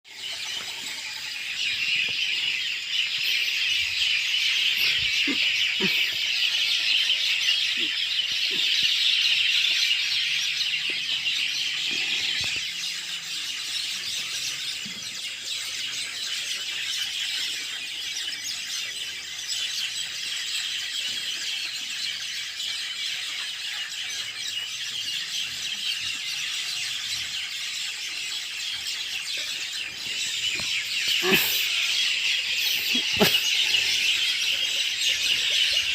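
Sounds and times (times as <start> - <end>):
shrill insect chorus: 30.0 - 35.9.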